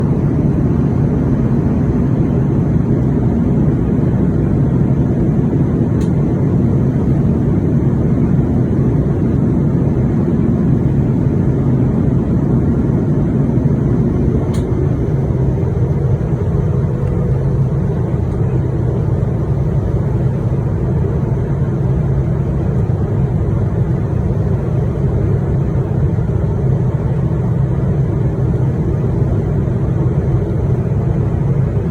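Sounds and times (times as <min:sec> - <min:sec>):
aircraft cabin rushing noise: 0:05.2 - 0:21.7.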